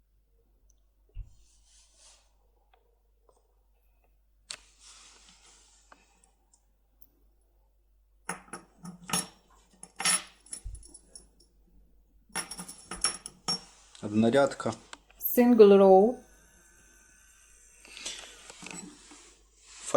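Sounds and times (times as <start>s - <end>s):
metal parts clicking and clinking: 8.9s - 11.3s, 12.4s - 13.7s.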